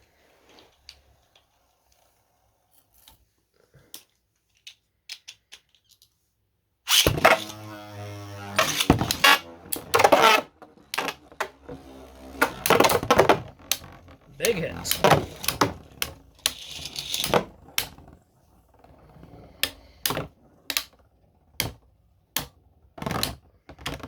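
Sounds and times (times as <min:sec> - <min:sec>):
spinning tops whirring: 0:06.9 - 0:21.0
spinning tops clacking together: 0:08.4 - 0:18.0.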